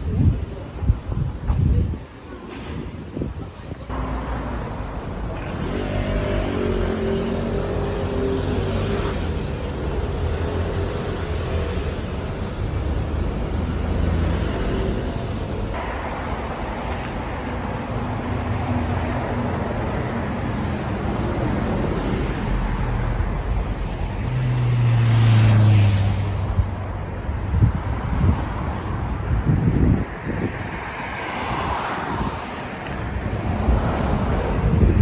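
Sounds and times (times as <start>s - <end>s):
road traffic: 0.0s - 35.0s
vehicle passing close: 18.0s - 28.8s.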